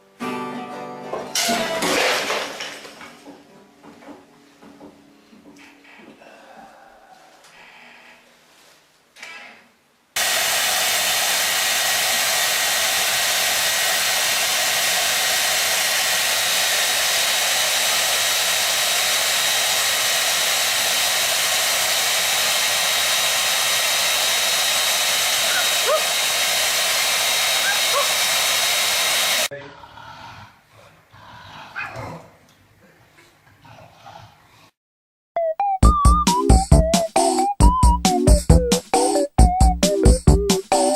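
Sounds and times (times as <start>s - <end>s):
loud rushing blower noise: 10.2s - 29.5s.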